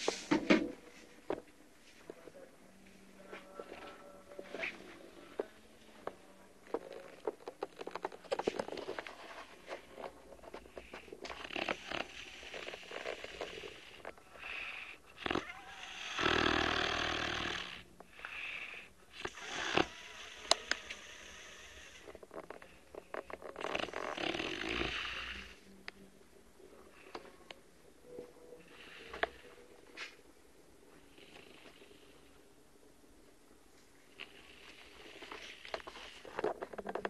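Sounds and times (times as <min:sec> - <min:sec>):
man snoring: 0:11.4 - 0:22.1, 0:23.6 - 0:25.6.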